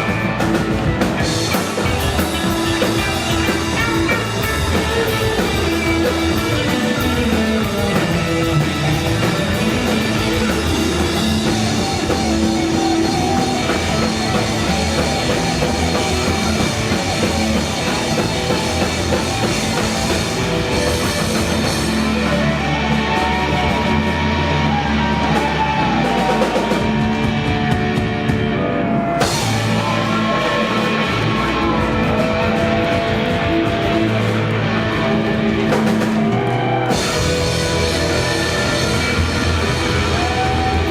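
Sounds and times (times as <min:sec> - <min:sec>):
gliding guitar notes: 0:00.0 - 0:27.9
live rock band playing: 0:00.0 - 0:40.9.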